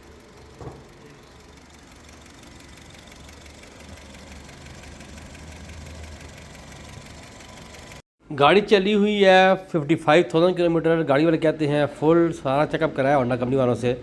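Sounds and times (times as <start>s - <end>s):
car engine idling: 0.0s - 8.0s.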